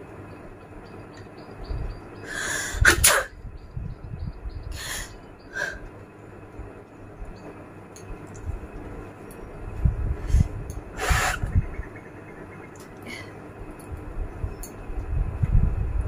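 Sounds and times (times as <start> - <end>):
person sneezing: 2.8 - 3.3
short breathy bursts: 4.7 - 5.9, 10.2 - 11.5.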